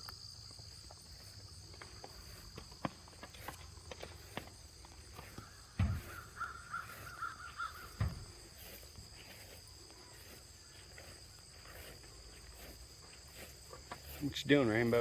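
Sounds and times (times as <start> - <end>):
high insect drone: 0.0 - 15.0
crow cawing: 5.2 - 8.3.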